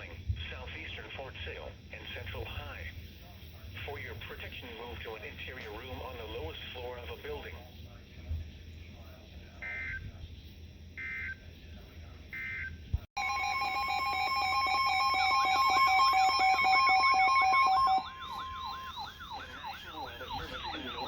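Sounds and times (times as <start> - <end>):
data burst: 13.2 - 21.0
fast-warbling siren tone: 13.2 - 21.0
two-tone attention signal: 13.2 - 21.0.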